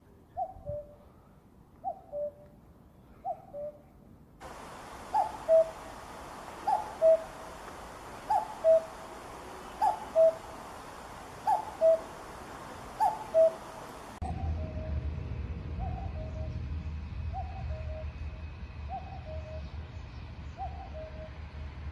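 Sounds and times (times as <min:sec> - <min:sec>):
light background hiss: 0:04.4 - 0:14.2
cuckoo calling: 0:04.4 - 0:14.7.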